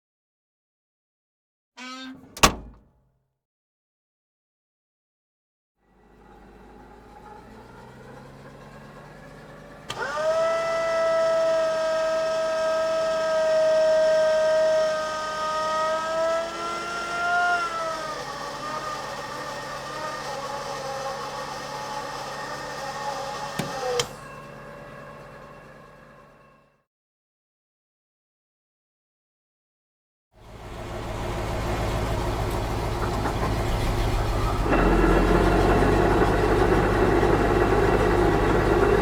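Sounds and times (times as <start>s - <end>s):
click: 9.9s - 10.1s, 23.6s - 24.2s
fire truck idling: 30.4s - 39.0s.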